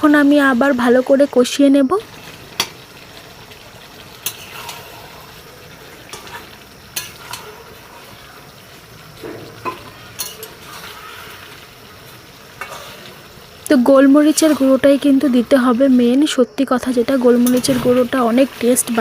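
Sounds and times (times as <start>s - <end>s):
chicken sizzling in oil: 0.0s - 19.0s
spatula scraping and knocking pan: 4.2s - 5.0s, 9.2s - 11.6s, 12.5s - 13.2s.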